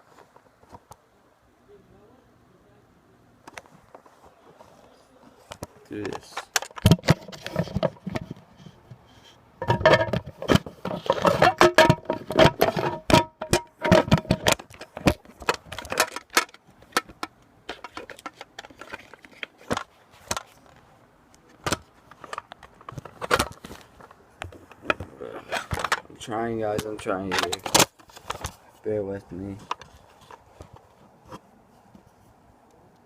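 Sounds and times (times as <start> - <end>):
tool clicking and scraping casing: 9.6 - 20.6, 21.5 - 26.1, 26.7 - 28.6, 29.6 - 31.4.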